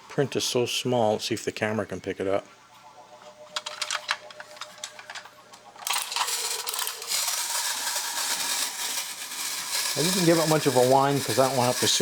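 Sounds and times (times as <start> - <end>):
clockwork motor whirring: 5.8 - 12.0.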